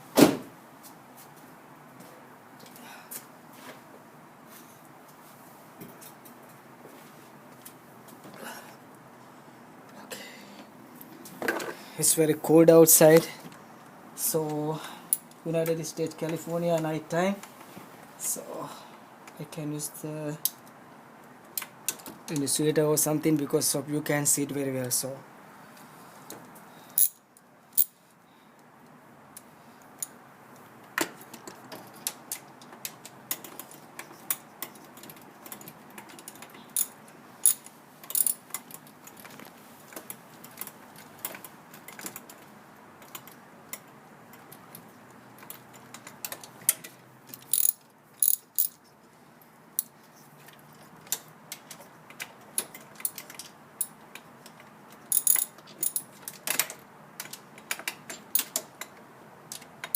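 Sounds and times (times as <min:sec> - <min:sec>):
hand tools clicking on metal: 0:31.3 - 0:38.8, 0:45.4 - 0:48.8, 0:51.1 - 0:59.9.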